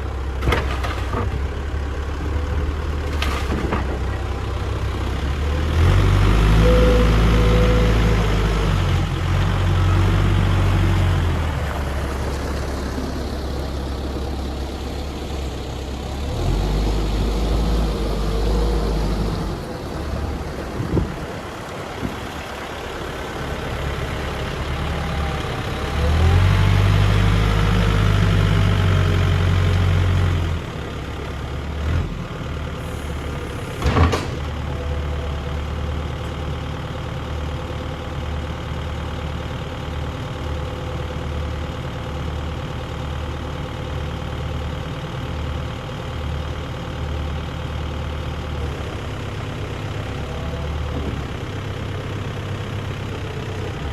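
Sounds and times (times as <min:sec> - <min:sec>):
diesel engine revving: 0:00.0 - 0:36.2.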